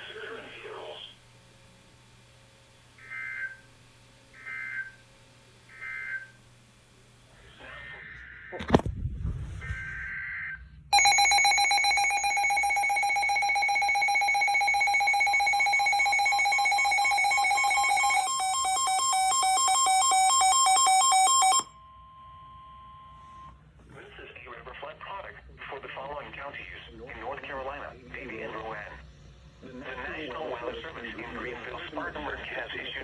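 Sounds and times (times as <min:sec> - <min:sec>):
weather radio alarm tone: 0:11.0 - 0:21.8.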